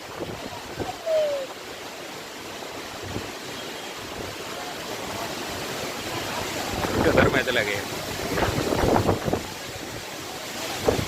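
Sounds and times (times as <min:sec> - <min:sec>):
strong wind blowing: 0:00.0 - 0:01.9, 0:05.1 - 0:11.0.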